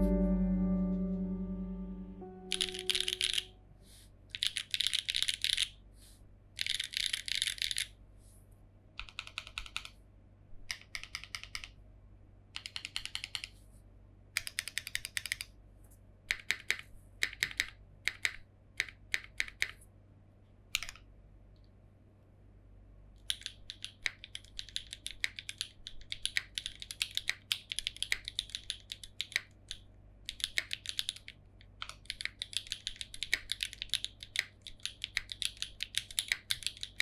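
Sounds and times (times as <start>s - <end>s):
mechanical keyboard typing: 4.3s - 5.7s, 6.6s - 7.9s, 9.0s - 9.9s, 10.7s - 11.7s, 12.6s - 13.5s, 14.4s - 15.5s, 23.3s - 37.0s.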